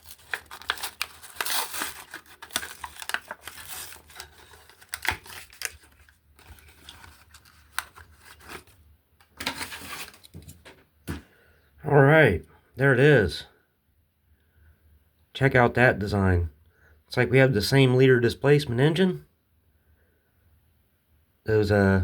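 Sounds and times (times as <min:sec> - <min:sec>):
blister pack crinkling and tearing: 0:00.0 - 0:08.8.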